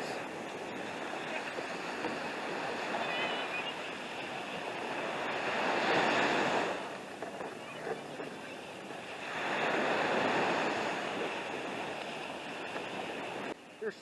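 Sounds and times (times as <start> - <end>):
ocean surf washing ashore: 0.0 - 14.0.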